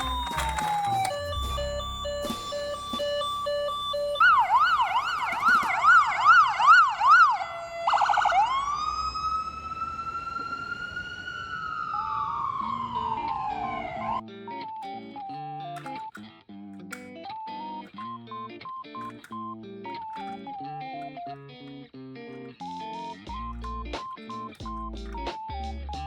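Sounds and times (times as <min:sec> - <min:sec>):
toy electronic siren: 0:00.0 - 0:16.2, 0:16.9 - 0:21.5.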